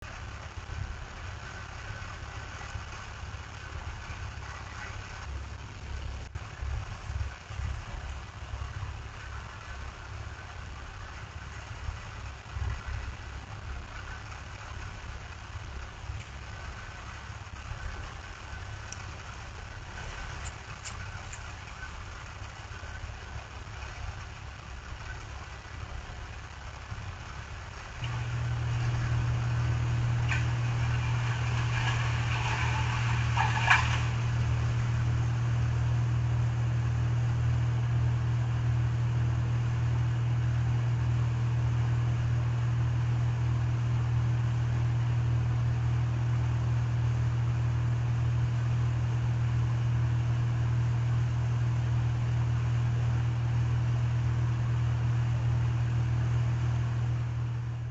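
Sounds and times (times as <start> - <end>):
motor humming: 28.0 - 43.2.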